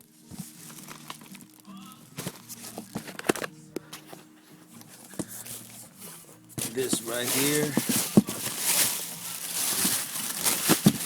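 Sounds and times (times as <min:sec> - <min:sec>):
rustling: 0:00.0 - 0:11.0
handling knocks: 0:06.6 - 0:11.0.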